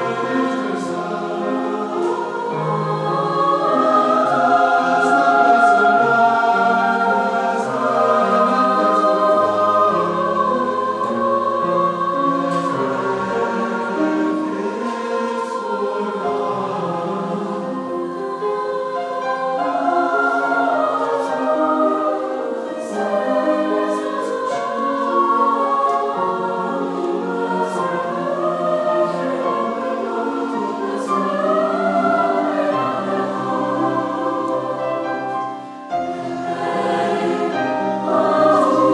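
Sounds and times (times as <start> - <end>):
choir singing: 0.0 - 38.9.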